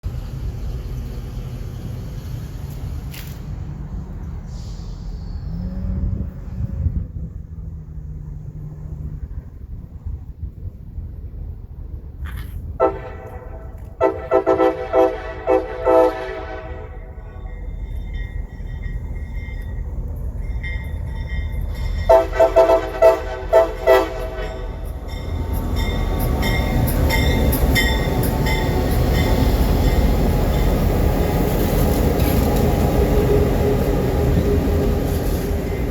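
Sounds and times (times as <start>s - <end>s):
rumble of locomotive engines and wheels: 0.0s - 35.9s
locomotive air horn blasts: 12.8s - 17.4s, 22.1s - 24.9s.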